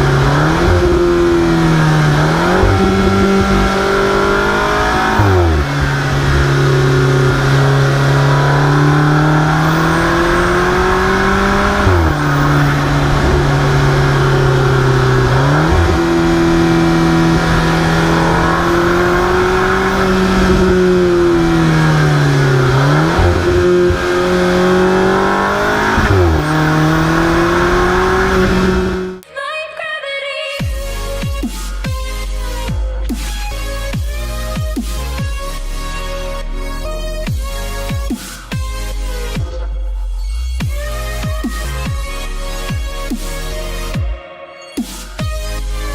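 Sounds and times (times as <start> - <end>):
car engine revving: 0.0 - 29.2, 30.8 - 44.0
electronic music: 0.0 - 45.9.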